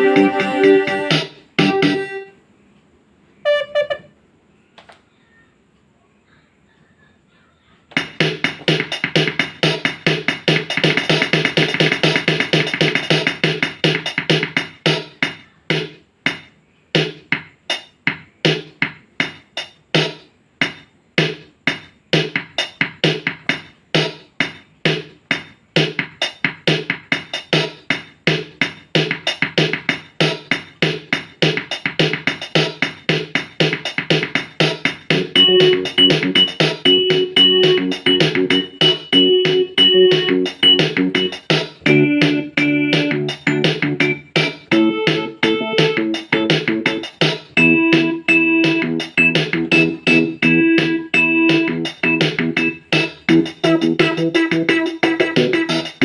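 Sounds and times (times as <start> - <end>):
held keyboard notes: 0.0 - 2.4, 3.4 - 4.2, 29.1 - 56.0
keyboard accompaniment chords: 0.0 - 2.4, 3.5 - 4.2, 35.1 - 56.0
keyboard drum-machine rhythm: 0.0 - 2.4, 3.5 - 4.2, 7.9 - 56.0.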